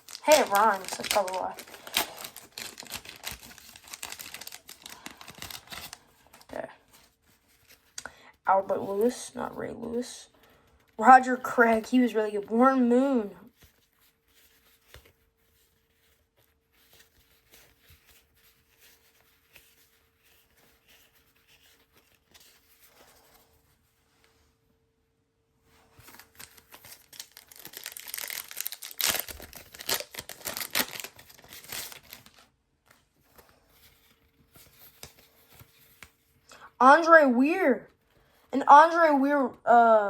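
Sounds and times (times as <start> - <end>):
card pack wrapper crinkling: 0.0 - 8.0, 25.9 - 36.1
trading cards handled: 0.0 - 8.0, 13.5 - 23.6, 25.8 - 36.4.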